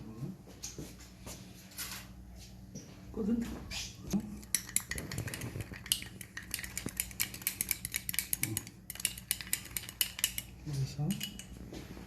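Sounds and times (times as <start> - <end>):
utensils clinking on dishes: 4.2 - 11.6.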